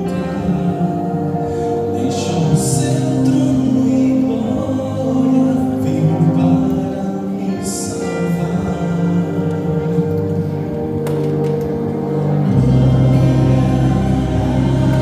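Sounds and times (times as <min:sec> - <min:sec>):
vocal group singing gospel song: 0:00.0 - 0:15.0.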